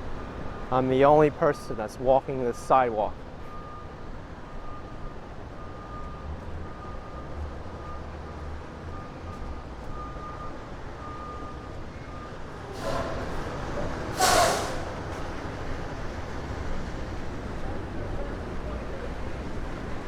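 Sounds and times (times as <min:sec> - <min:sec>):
low engine rumble: 0:00.0 - 0:20.0
truck reversing beeper: 0:02.4 - 0:20.0
air brake hiss: 0:12.7 - 0:15.3.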